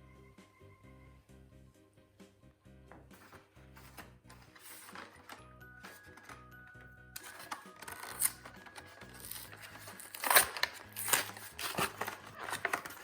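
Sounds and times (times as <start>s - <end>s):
quiet background music: 0.0s - 13.0s
packaging crinkling and tearing: 3.8s - 6.4s, 7.2s - 13.0s.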